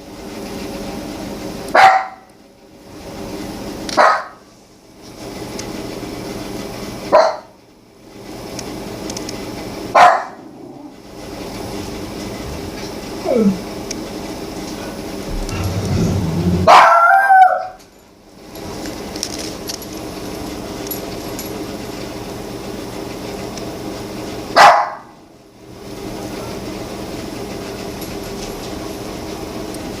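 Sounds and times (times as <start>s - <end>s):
dog barking: 1.8s - 2.3s, 4.0s - 4.4s, 7.1s - 7.5s, 10.0s - 10.4s, 16.6s - 17.8s, 24.6s - 25.1s
steady low hum: 10.4s - 20.2s.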